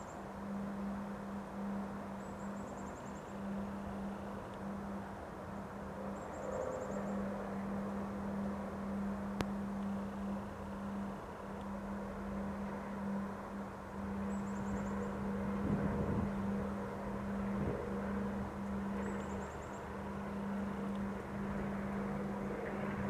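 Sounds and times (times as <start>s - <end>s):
constant low hum: 0.0s - 23.0s
gusting wind: 13.9s - 19.2s.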